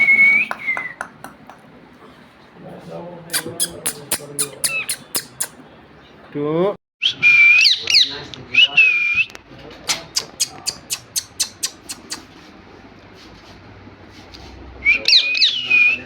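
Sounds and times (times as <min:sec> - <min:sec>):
whistled phrases: 0:00.0 - 0:01.0, 0:03.3 - 0:05.5, 0:07.0 - 0:12.2, 0:14.8 - 0:16.0
sharp clicks: 0:09.9 - 0:12.2.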